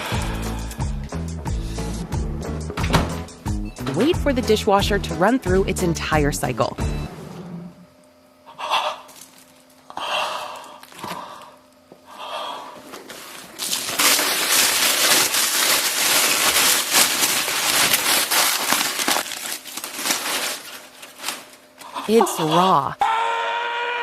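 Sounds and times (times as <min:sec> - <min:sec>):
tin foil crinkling and tearing: 0:09.1 - 0:09.8, 0:10.6 - 0:11.2, 0:13.0 - 0:22.7.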